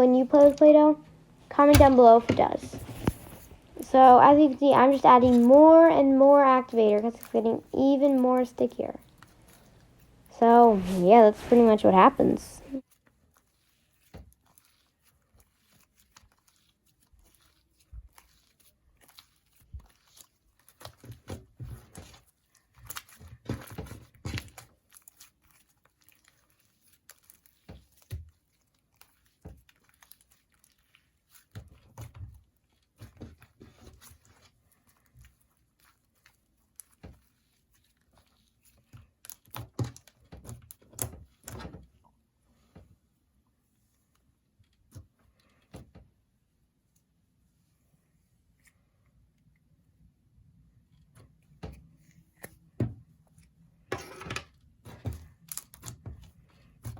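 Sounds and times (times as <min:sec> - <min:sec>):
slime being kneaded: 0:00.0 - 0:42.0.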